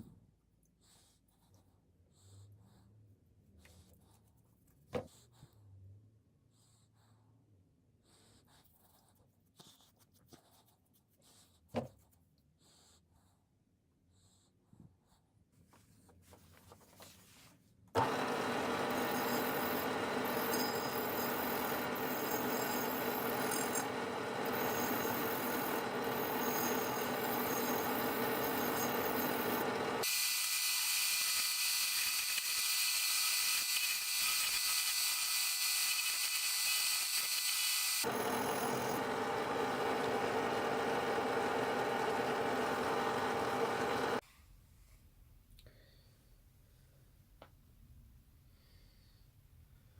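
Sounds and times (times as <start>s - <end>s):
power tool running: 18.0s - 44.2s.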